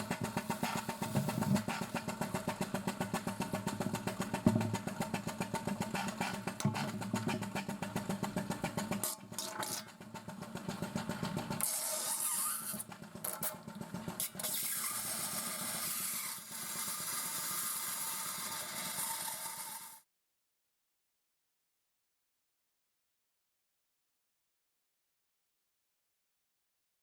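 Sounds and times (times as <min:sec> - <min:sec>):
diaphragm pump pulsing: 0:00.0 - 0:15.0.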